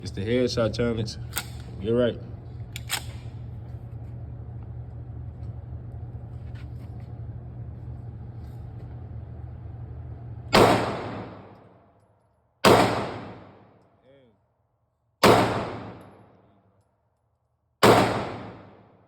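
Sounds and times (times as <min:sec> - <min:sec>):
steady low hum: 0:00.0 - 0:19.0
gunshots: 0:10.6 - 0:11.6, 0:12.6 - 0:13.7, 0:15.2 - 0:16.2, 0:17.8 - 0:18.9.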